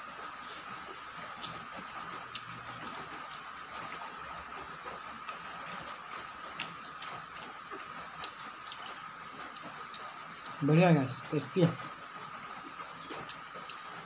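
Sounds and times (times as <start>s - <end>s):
person chewing wet clicks: 0.5s - 3.3s, 5.2s - 10.6s, 12.6s - 14.0s.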